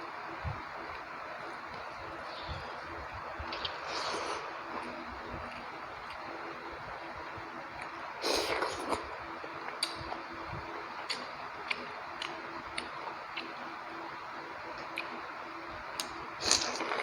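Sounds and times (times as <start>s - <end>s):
faint steady hum: 0.0s - 17.0s
chewing food: 0.8s - 6.6s, 7.8s - 10.3s, 10.9s - 13.8s, 14.7s - 15.3s, 15.9s - 17.0s
mouth clicks and smacks: 3.5s - 6.3s, 9.7s - 10.2s, 11.0s - 13.6s.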